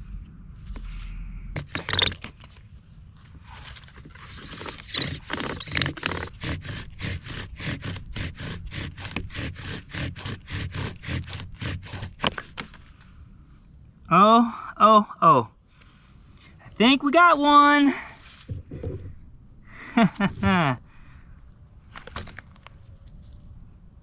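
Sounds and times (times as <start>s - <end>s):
bow drill spindle grinding: 1.6s - 2.2s, 4.1s - 12.5s.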